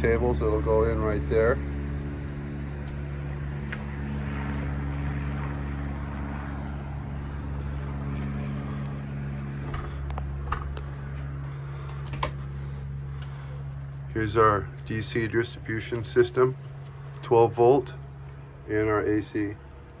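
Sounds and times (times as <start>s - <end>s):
low machinery hum: 0.0s - 20.0s.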